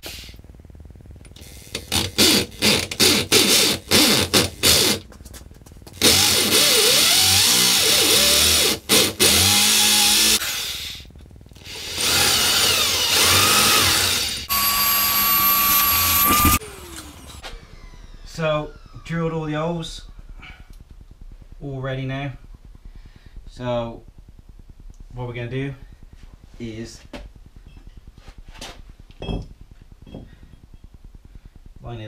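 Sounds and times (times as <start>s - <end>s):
power drill drilling into concrete: 1.4s - 5.0s, 6.0s - 11.0s, 11.6s - 17.6s.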